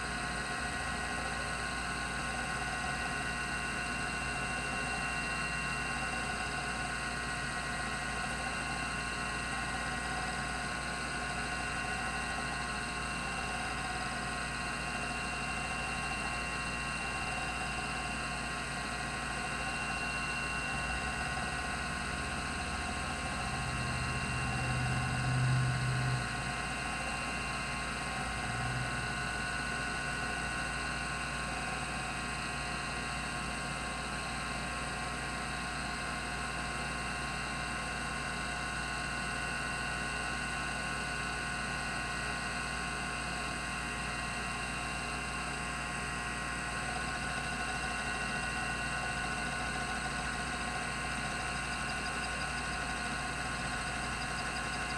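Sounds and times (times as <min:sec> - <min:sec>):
hard drive whirring: 0:00.0 - 0:33.2, 0:45.4 - 0:54.9.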